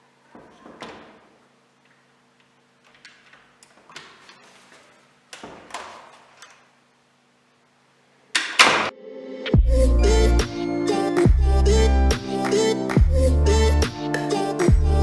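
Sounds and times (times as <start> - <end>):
music: 8.9 - 15.0.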